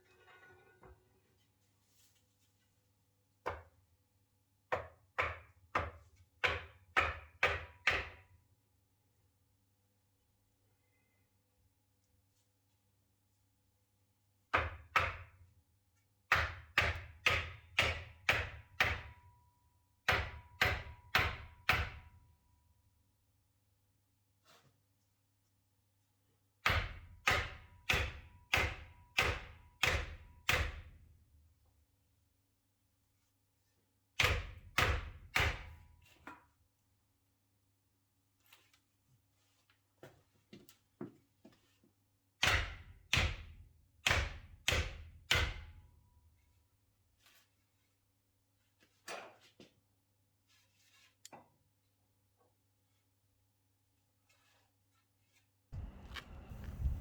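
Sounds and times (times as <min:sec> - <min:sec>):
axe chopping wood: 0:16.3 - 0:19.1, 0:20.1 - 0:22.0, 0:26.6 - 0:30.9, 0:34.2 - 0:35.7, 0:42.4 - 0:43.4
heavy thuds: 0:55.8 - 0:57.0.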